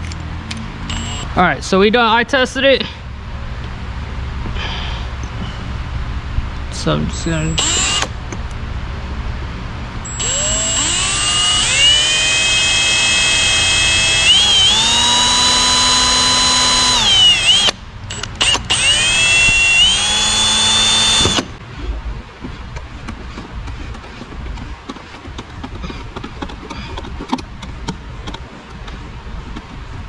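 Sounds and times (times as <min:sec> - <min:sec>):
cordless drill motor whine: 0:00.9 - 0:01.3, 0:07.4 - 0:08.1, 0:10.0 - 0:21.5.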